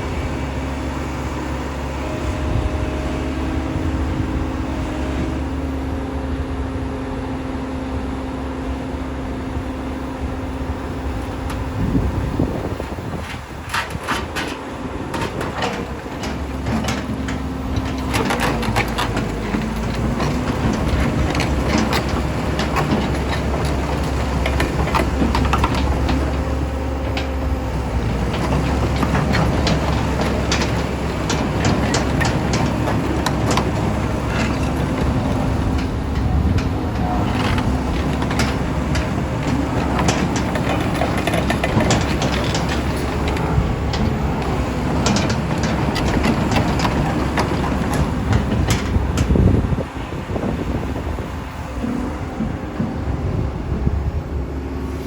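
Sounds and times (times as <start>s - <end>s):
excavator diesel rumble: 0.0s - 55.0s
metallic clanks and knocks: 12.9s - 49.8s.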